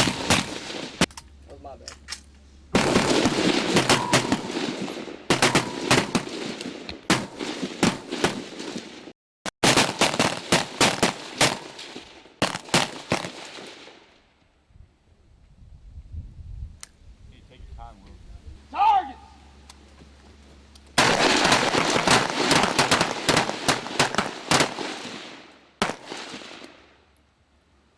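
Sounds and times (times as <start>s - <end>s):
rifle shots echoing: 0.0s - 1.1s, 2.8s - 9.0s, 9.6s - 14.0s, 21.0s - 26.7s.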